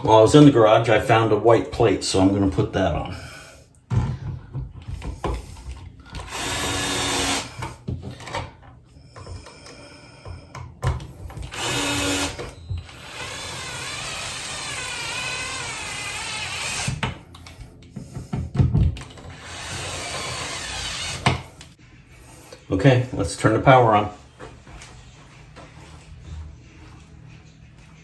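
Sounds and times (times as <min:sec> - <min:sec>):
electric screwdriver driving screws: 0:06.2 - 0:08.4, 0:11.4 - 0:17.2, 0:19.1 - 0:21.7.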